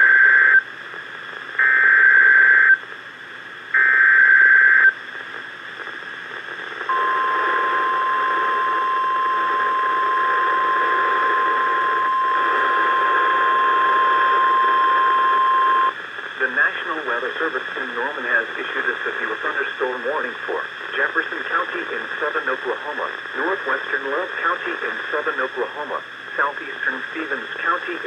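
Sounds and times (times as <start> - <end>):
radio hiss: 0.0 - 28.0
steady attention tone: 6.9 - 16.0.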